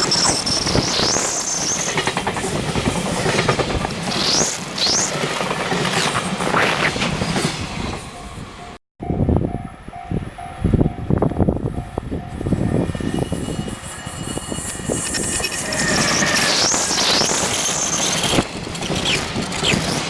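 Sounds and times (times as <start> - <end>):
freight train rolling: 0.0 - 20.0
crossing bell ringing: 8.1 - 18.6.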